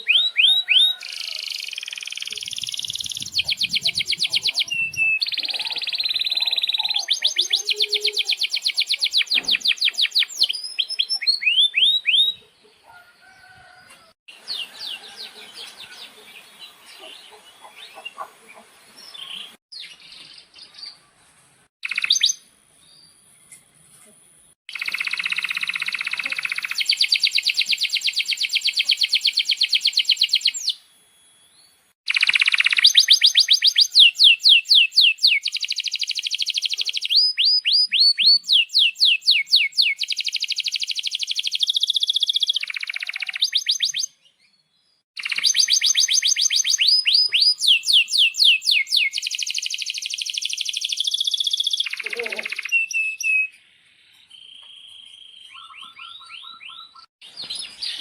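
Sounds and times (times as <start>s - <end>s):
canary singing: 0.0s - 13.6s, 24.7s - 31.0s, 32.1s - 44.2s, 45.2s - 53.6s, 54.4s - 58.0s.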